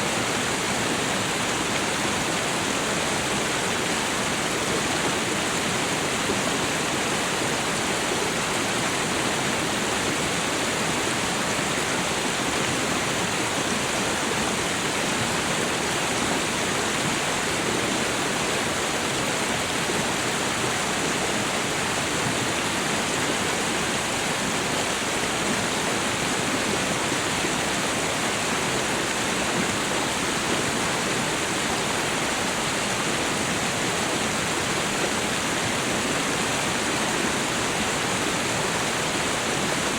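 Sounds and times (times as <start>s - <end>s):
water rushing over small waterfall: 0.0s - 39.9s.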